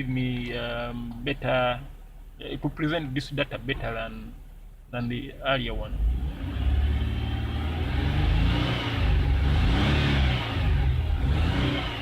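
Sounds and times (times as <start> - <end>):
car engine revving: 5.9 - 12.0.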